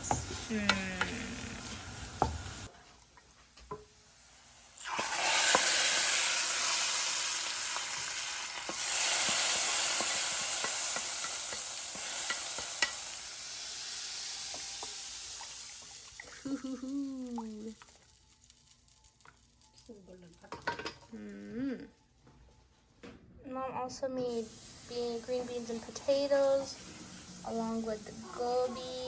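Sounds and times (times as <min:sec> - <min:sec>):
food sizzling in hot oil: 0:00.0 - 0:02.7, 0:03.9 - 0:21.1, 0:24.2 - 0:29.0
spoon tapping pan: 0:02.2 - 0:02.6, 0:08.7 - 0:13.1.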